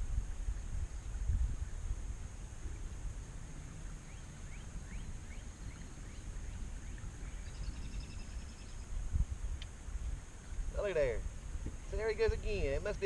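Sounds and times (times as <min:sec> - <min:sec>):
wind rumble on microphone: 0:00.0 - 0:13.0
birds chirping and trilling: 0:03.6 - 0:09.0.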